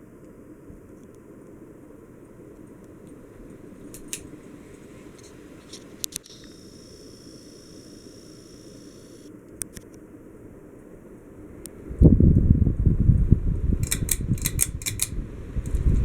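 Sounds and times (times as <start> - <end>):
sharp clicks: 5.2 - 6.9, 8.2 - 10.0, 13.8 - 15.8
ceiling fan whooshing: 10.6 - 16.0.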